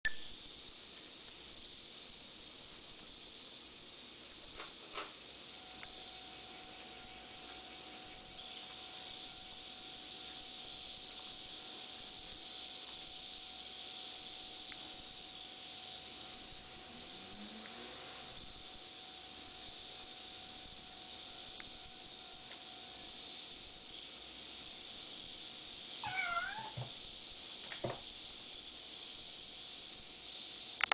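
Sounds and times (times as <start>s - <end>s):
crickets trilling: 0.1s - 30.9s
cat meowing: 26.0s - 26.9s.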